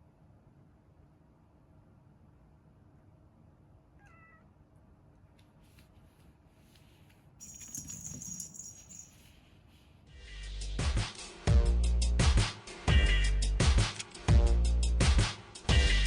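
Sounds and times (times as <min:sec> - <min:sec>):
kitten meowing: 0:04.0 - 0:04.5.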